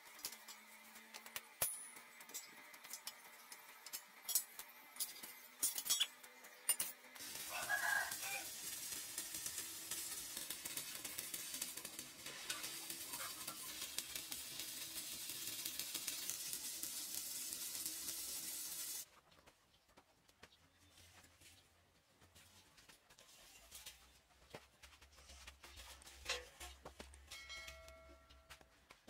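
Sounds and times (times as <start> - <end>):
welding arc crackling sizzle: 0.0 - 19.1.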